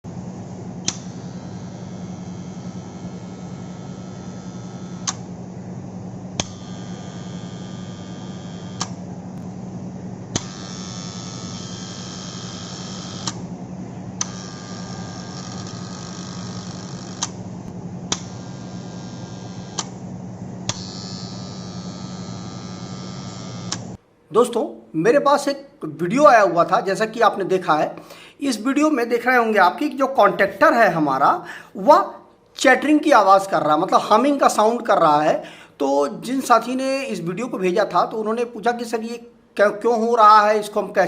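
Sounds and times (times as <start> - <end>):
contactor humming: 0.0 - 24.0
contactor clicking: 0.8 - 1.6, 2.3 - 5.3, 6.4 - 9.5, 10.3 - 13.4, 14.2 - 20.0, 20.7 - 24.0.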